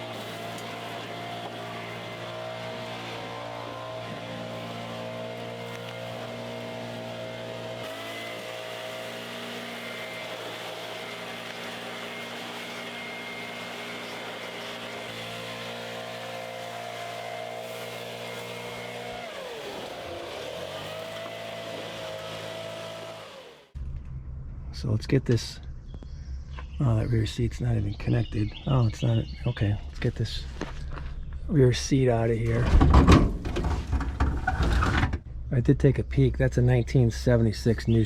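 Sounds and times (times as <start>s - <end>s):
motor running steadily: 0.0s - 23.8s.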